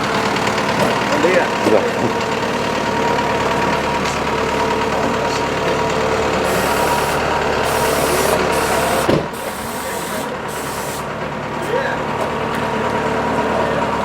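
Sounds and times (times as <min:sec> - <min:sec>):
rally car engine idling: 0:00.0 - 0:14.0
hiss: 0:06.5 - 0:11.1.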